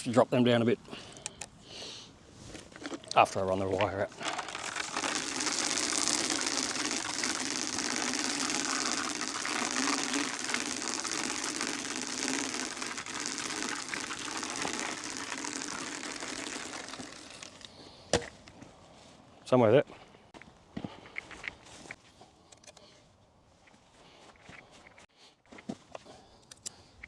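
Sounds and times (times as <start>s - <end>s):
wire reel whirring rattle: 2.8s - 17.7s.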